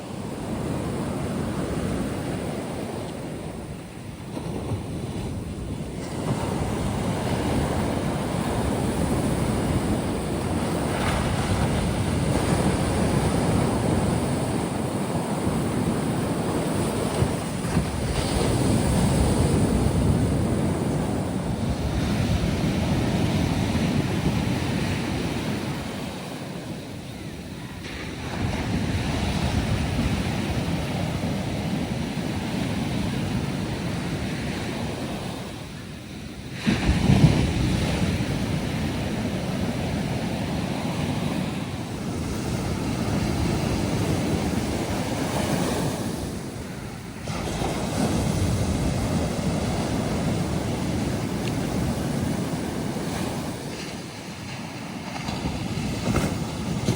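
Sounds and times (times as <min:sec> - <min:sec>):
waves breaking on beach: 0:00.0 - 0:56.9.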